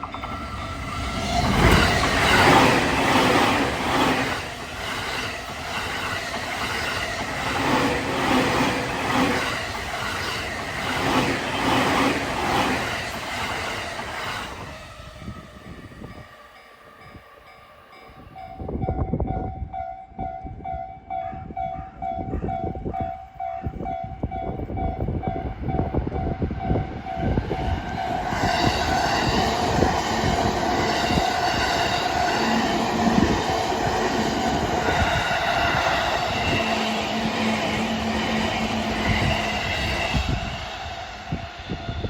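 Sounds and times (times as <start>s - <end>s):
train wheels clattering: 0.0s - 14.7s.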